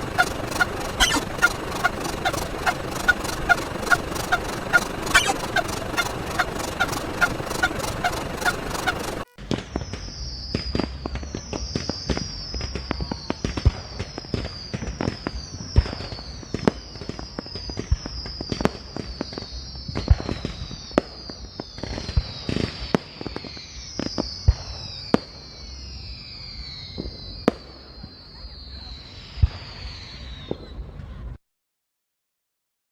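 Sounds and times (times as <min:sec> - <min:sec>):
high falling chirp: 0:00.0 - 0:09.3
repeated honk: 0:00.0 - 0:09.4
sharp pops and crackles: 0:00.0 - 0:10.1.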